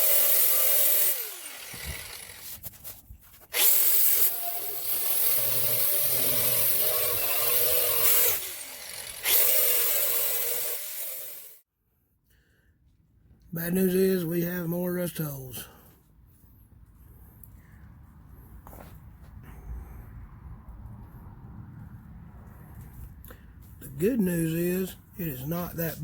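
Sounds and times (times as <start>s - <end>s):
rotary power tool on sheet metal: 0.0s - 2.9s, 3.5s - 11.6s.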